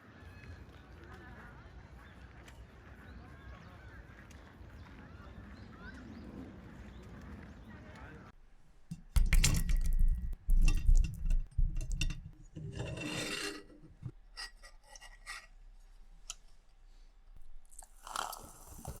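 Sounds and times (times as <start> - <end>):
low thuds: 8.8 - 12.6
rasping and rubbing: 10.1 - 16.0.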